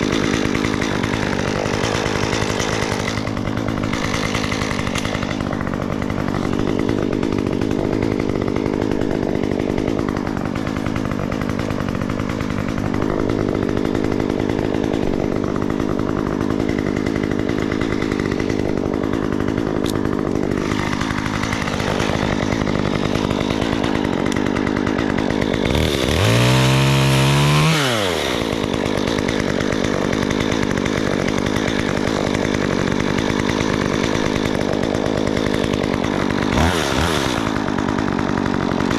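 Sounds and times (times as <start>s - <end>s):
chainsaw running and revving: 0.0s - 38.9s.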